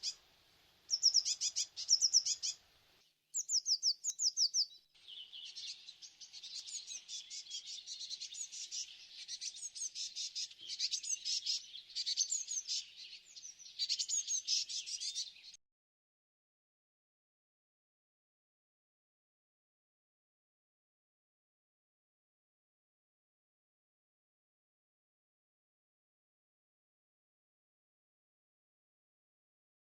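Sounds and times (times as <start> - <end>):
songbirds singing: 0.0 - 15.6
birds chattering and twittering: 0.9 - 15.6.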